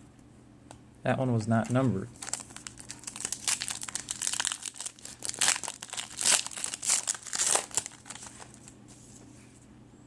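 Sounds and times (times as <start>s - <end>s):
plastic wrapper crinkling: 2.1s - 8.8s.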